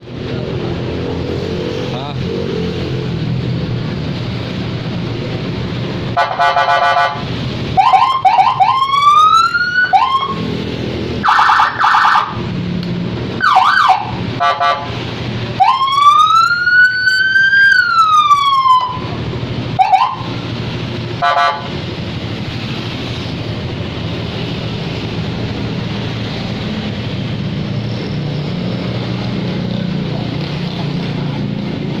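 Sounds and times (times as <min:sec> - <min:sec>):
electronic siren: 0:07.8 - 0:10.5, 0:11.2 - 0:12.4, 0:13.4 - 0:14.8, 0:15.6 - 0:19.1, 0:19.8 - 0:20.3
steady low rumble: 0:17.9 - 0:32.0.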